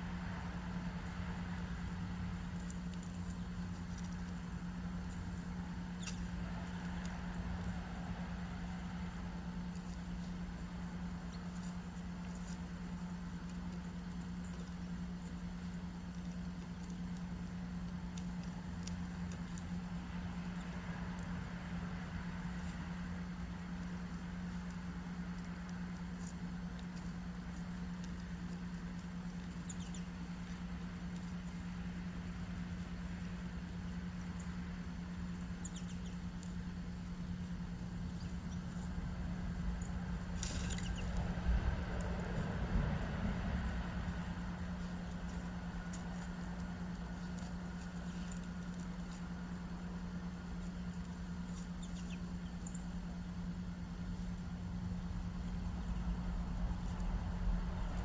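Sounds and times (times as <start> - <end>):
steady low hum: 0.0 - 58.0
small birds chirping: 0.4 - 41.7, 43.6 - 53.5
low rumble: 37.8 - 45.8, 54.4 - 58.0.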